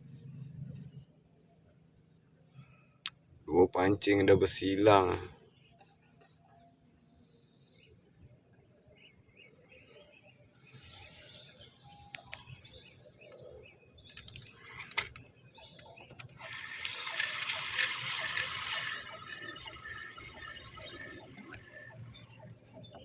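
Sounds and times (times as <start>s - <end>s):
faint bird chirps: 0.0s - 23.0s
sharp clicks: 14.0s - 22.4s.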